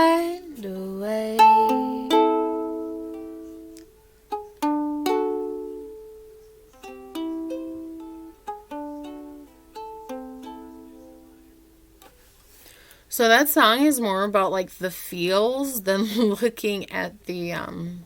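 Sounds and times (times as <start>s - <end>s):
acoustic stringed instrument strumming: 0.0s - 12.3s.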